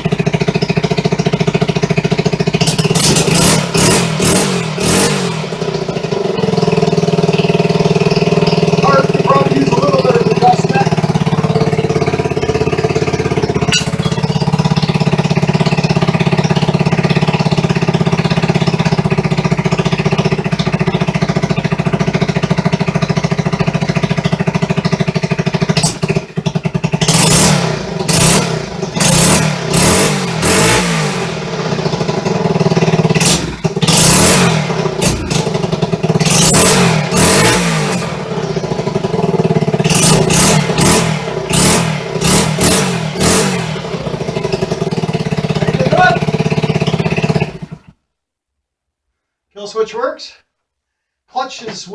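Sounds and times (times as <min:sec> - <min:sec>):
motorcycle engine fast idle: 0:00.0 - 0:48.0
throttle blips: 0:13.4 - 0:14.6.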